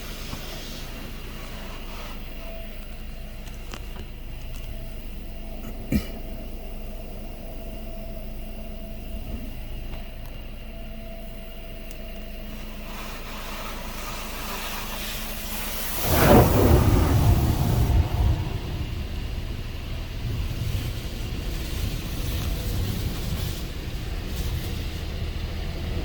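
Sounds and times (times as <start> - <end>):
car wash machine hum: 0.0 - 26.0
rushing water spray: 12.6 - 25.6.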